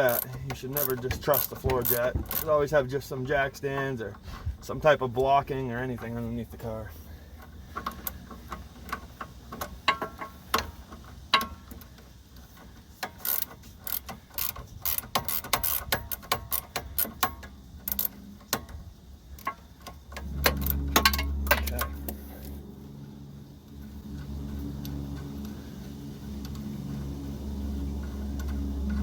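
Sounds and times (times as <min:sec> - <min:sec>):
ratchet clicking: 0:00.0 - 0:04.2, 0:07.2 - 0:29.0
low rumble: 0:17.6 - 0:29.0.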